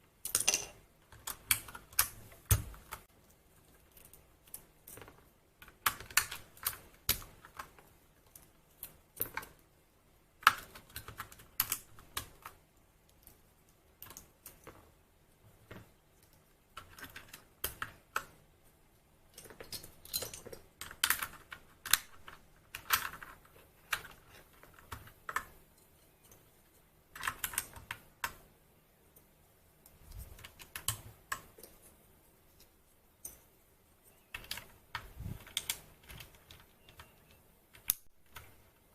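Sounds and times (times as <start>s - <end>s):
mechanical keyboard typing: 4.9s - 9.6s, 10.4s - 12.6s, 16.8s - 18.4s, 20.4s - 25.5s, 27.2s - 28.4s, 30.2s - 31.5s, 34.3s - 38.6s.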